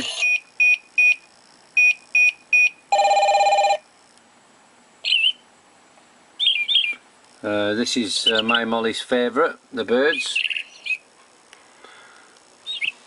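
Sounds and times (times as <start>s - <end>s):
electronic alarm beeping: 0.1s - 1.2s, 1.8s - 3.8s
recorded birdsong chirps: 5.0s - 5.5s, 6.4s - 7.1s, 8.0s - 8.8s, 10.0s - 11.1s, 12.6s - 13.0s.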